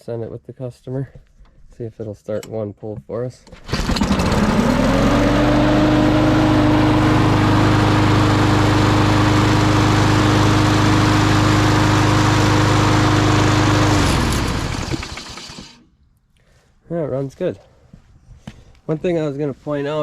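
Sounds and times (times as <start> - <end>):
push mower engine running: 3.5 - 15.9
engine winding down: 3.6 - 15.9.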